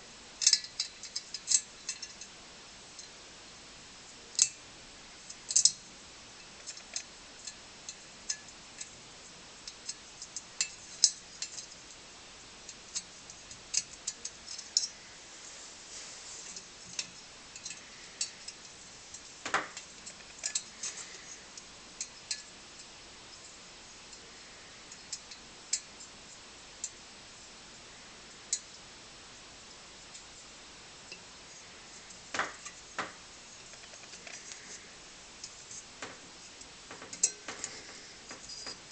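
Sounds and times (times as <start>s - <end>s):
small metal parts clinking: 0.4s - 2.3s.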